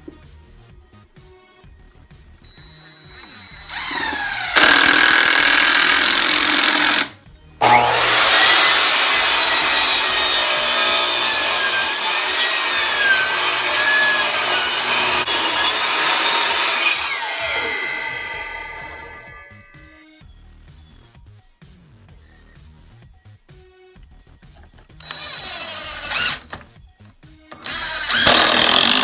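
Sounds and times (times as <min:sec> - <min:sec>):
power saw cutting wood: 0:02.5 - 0:19.8, 0:24.9 - 0:26.7, 0:27.5 - 0:29.0.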